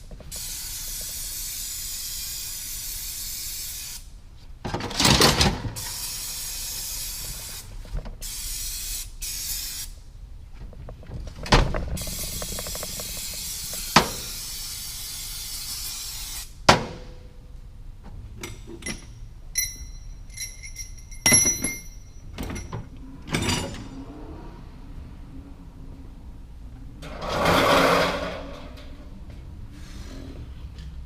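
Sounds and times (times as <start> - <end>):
spray hissing: 12.0 - 16.6
metal parts clinking: 18.4 - 23.9
sharp metal clanks: 18.4 - 23.9.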